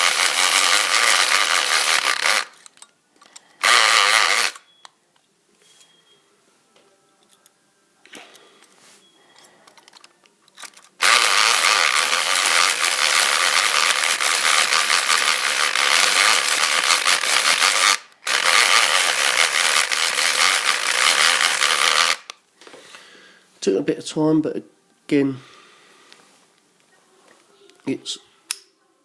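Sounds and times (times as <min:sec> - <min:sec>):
electric pick gun rattling: 0:00.0 - 0:04.6, 0:10.6 - 0:22.4.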